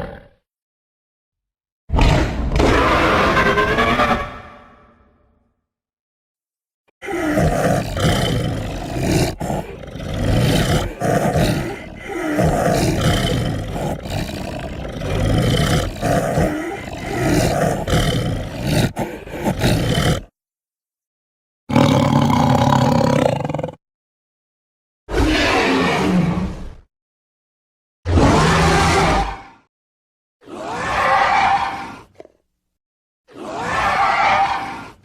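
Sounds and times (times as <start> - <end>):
rasping dinosaur roars and growls: 0.0 - 0.4, 2.0 - 4.7, 7.0 - 20.3, 21.7 - 23.8, 25.1 - 26.8, 28.1 - 29.7, 30.4 - 32.3, 33.3 - 35.0.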